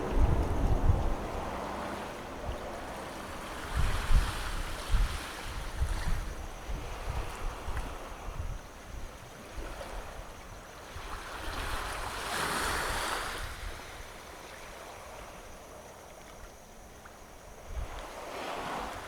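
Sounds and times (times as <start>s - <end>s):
sea waves washing onto sand: 0.0s - 0.2s
wind gusts on microphone: 0.0s - 14.2s, 17.6s - 19.0s.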